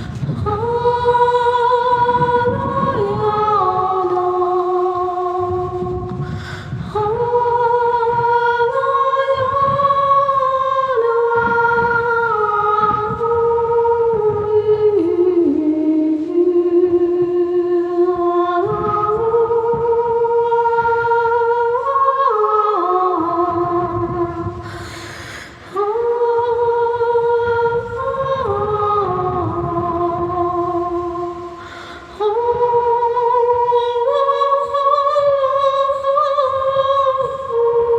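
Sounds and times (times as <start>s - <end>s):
wordless singing: 0.0s - 37.9s
breathy hiss: 6.0s - 7.2s, 24.3s - 26.2s, 30.6s - 34.8s.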